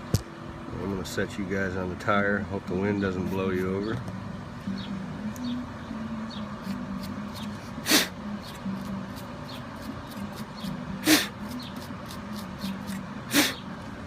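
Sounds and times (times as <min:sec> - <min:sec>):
short loud hissing bursts: 0:13.3 - 0:13.6.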